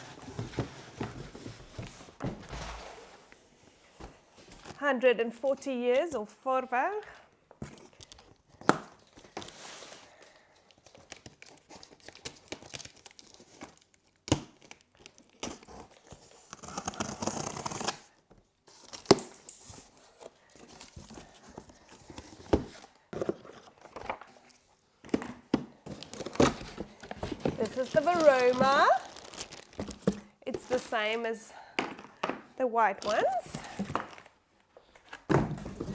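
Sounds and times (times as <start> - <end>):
paper and plastic wrapping tearing: 10.7 - 18.1, 25.9 - 31.0, 33.0 - 34.2.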